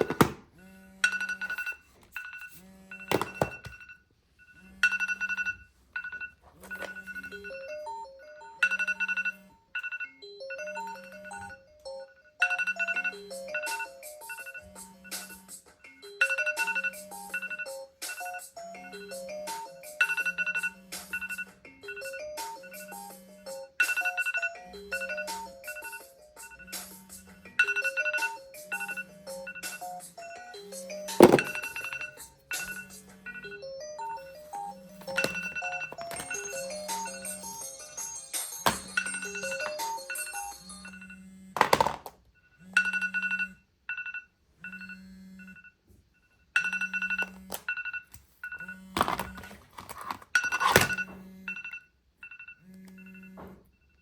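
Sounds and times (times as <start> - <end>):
electronic alarm melody: 18.7 - 41.5, 42.4 - 49.5.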